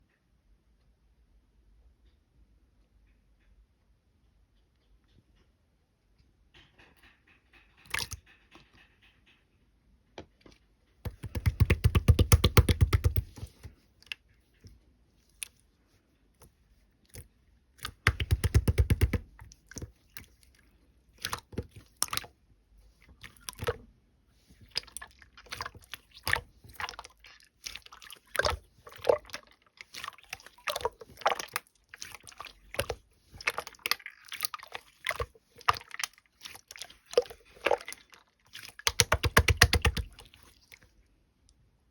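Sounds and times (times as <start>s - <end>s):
slime squishing with wet pops: 7.8s - 8.3s, 11.0s - 15.7s, 16.4s - 41.0s.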